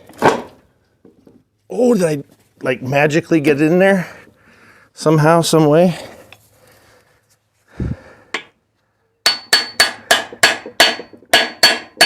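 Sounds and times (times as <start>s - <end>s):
hammer ringing on steel: 9.2s - 12.0s.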